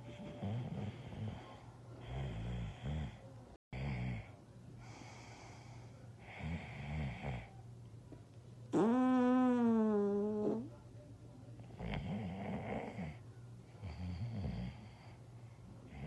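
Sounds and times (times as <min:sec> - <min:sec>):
breathing: 0:00.0 - 0:03.3, 0:04.8 - 0:06.8, 0:13.8 - 0:16.0
person snoring: 0:08.8 - 0:10.7.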